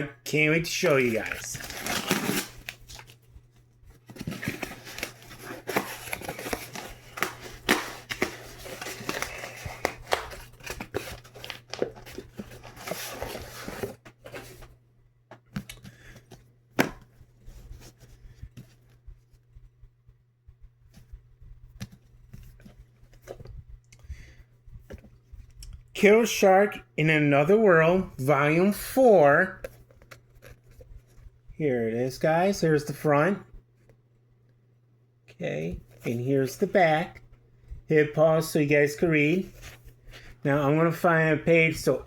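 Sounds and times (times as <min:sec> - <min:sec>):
packaging tearing and crinkling: 0:00.8 - 0:03.2, 0:04.2 - 0:13.8.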